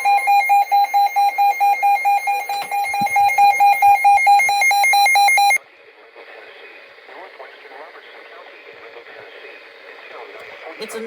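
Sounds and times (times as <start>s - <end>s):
loud electronic alert beeping: 0.0s - 5.6s.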